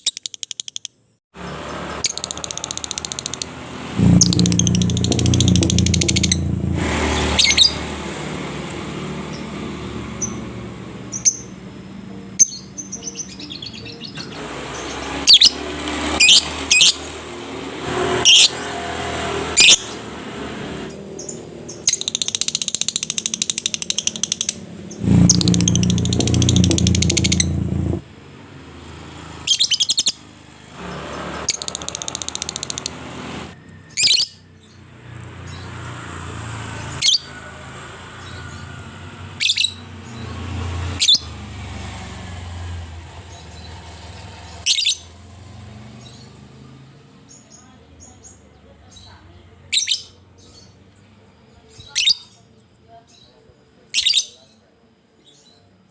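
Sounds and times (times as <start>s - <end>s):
lovebird chirping and trilling: 0.0s - 0.9s, 2.0s - 6.5s, 7.1s - 7.8s, 11.1s - 11.6s, 12.4s - 17.1s, 18.2s - 18.5s, 21.2s - 27.7s, 29.5s - 30.2s, 33.9s - 34.5s, 39.4s - 40.2s, 44.6s - 45.1s
low rumble: 4.0s - 7.8s, 25.0s - 28.0s.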